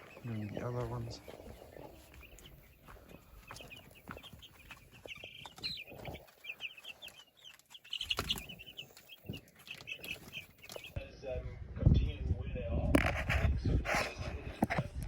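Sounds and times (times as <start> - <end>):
chicks peeping and chirping: 0.0 - 11.0.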